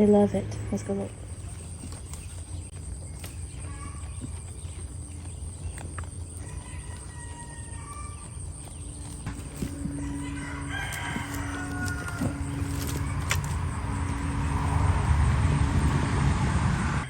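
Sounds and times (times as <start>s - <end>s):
animal calls: 0.0s - 16.1s
rooster crowing: 6.4s - 8.4s, 9.4s - 14.8s
steady low rumble: 8.2s - 17.0s.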